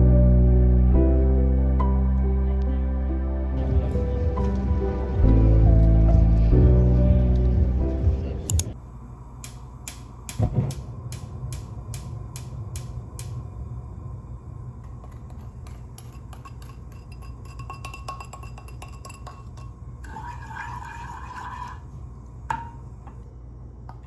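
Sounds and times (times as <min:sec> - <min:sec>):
background music: 0:00.0 - 0:08.8
dishes and cutlery clinking: 0:15.7 - 0:21.8.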